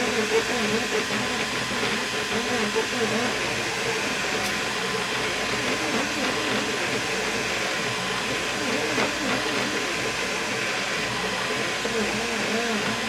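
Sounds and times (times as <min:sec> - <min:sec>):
stepper motors singing: 0:00.0 - 0:13.0.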